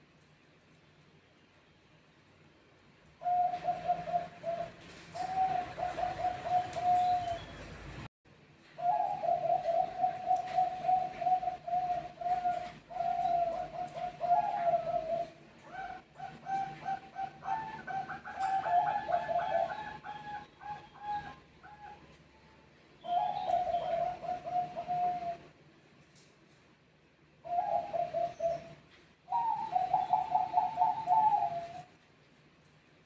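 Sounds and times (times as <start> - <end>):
doves cooing: 3.2 - 7.8, 8.8 - 22.2, 23.0 - 25.6, 27.4 - 32.0.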